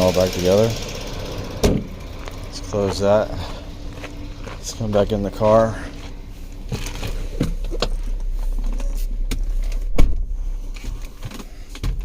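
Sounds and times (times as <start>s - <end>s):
car engine idling: 0.0s - 12.0s
loud thump: 1.6s - 2.0s, 6.7s - 10.5s.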